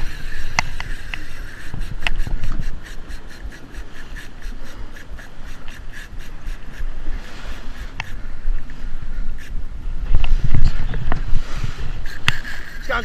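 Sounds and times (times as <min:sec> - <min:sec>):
fishing reel cranking: 0:00.0 - 0:06.8, 0:12.0 - 0:13.0
wind rumble on microphone: 0:00.0 - 0:13.0.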